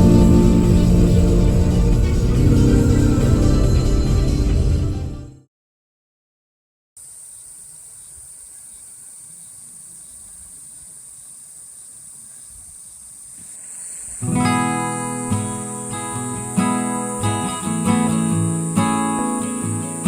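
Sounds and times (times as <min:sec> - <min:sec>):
strummed acoustic guitar music: 0:00.0 - 0:05.1, 0:14.2 - 0:20.0
high-pitched drone: 0:00.0 - 0:05.3.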